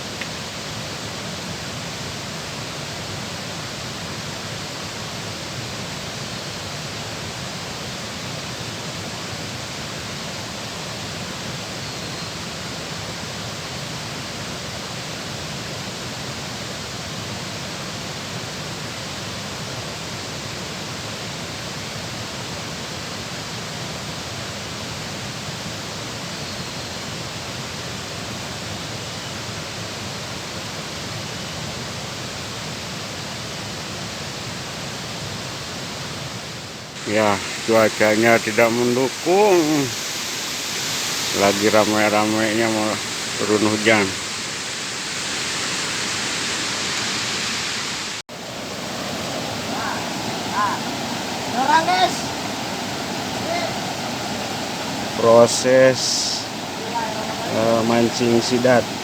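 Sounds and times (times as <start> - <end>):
fast-flowing water rushing: 27.1 - 59.0.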